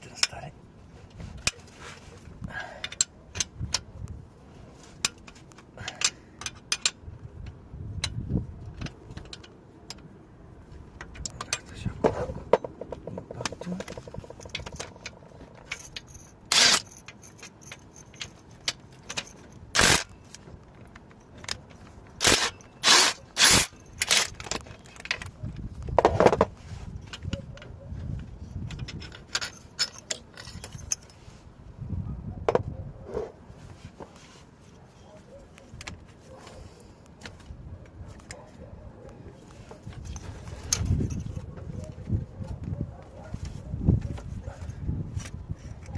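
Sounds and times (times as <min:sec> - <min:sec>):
metal tools clanking: 0:11.0 - 0:25.6, 0:26.4 - 0:31.3.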